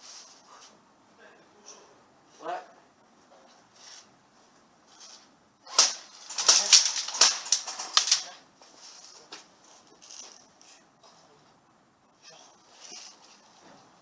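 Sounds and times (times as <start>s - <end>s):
airsoft guns firing: 5.7s - 8.4s.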